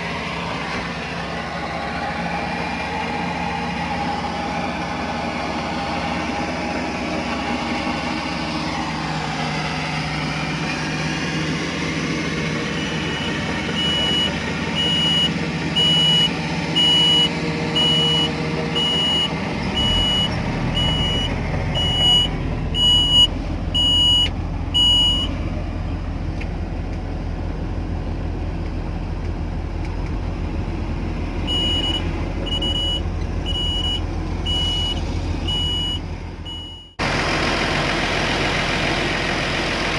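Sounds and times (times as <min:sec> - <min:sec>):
excavator diesel engine running: 0:00.0 - 0:39.9
electronic beeping alarm: 0:12.8 - 0:25.3, 0:31.5 - 0:37.0.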